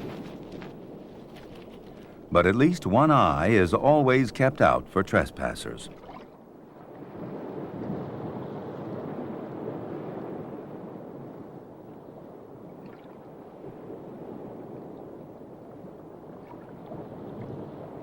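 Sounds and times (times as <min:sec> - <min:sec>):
water rushing: 0:02.3 - 0:06.5.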